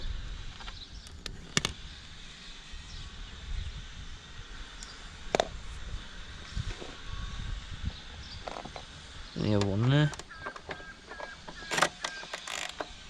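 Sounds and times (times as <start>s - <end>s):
hand tools clicking on metal bolts: 10.1s - 13.0s.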